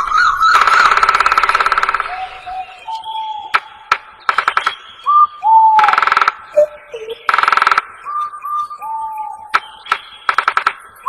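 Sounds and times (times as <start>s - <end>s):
whistled bird notes: 0.0s - 11.0s
songbird rattling trill: 0.2s - 11.0s
sharp clicks: 0.5s - 2.1s, 3.5s - 4.8s, 5.8s - 6.6s, 7.2s - 8.2s, 9.5s - 11.0s.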